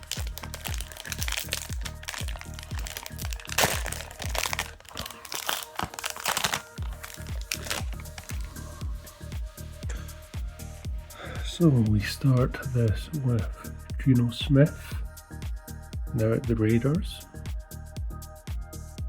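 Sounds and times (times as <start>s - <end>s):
foil wrapper crinkling and tearing: 0.0s - 8.8s
background music with steady beat: 0.0s - 19.0s.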